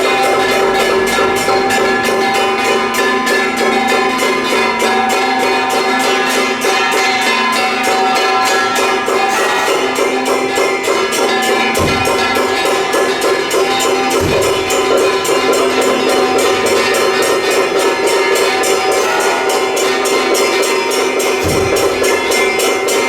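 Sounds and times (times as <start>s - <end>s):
held pitched tones: 0.0s - 5.5s
drums and metal percussion: 0.0s - 23.0s
deep drum thump: 14.1s - 17.5s, 21.4s - 22.1s.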